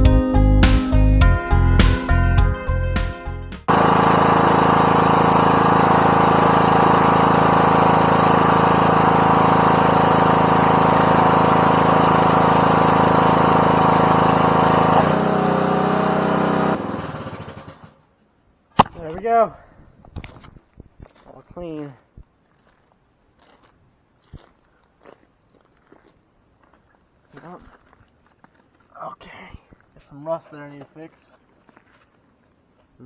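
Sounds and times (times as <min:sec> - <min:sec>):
small gasoline engine running: 0:03.7 - 0:18.0, 0:18.8 - 0:19.1.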